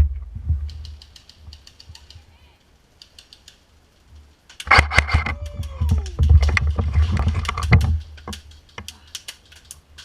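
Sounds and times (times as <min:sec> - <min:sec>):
low rumble: 0:04.8 - 0:08.2.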